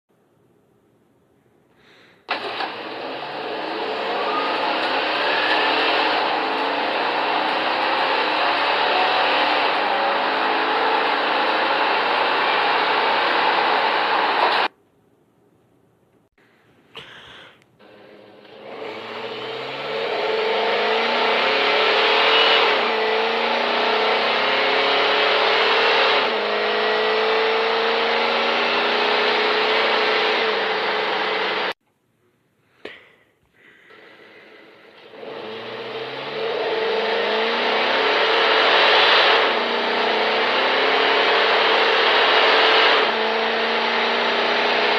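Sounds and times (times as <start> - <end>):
road noise: 1.9 - 14.7, 17.8 - 31.8
van engine accelerating: 2.3 - 14.7, 17.8 - 31.8, 33.9 - 44.9.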